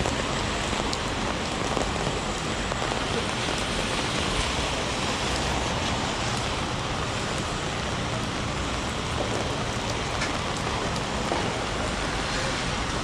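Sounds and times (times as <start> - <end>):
heavy rain hissing: 0.0 - 13.0
raindrop ticks: 5.4 - 12.0.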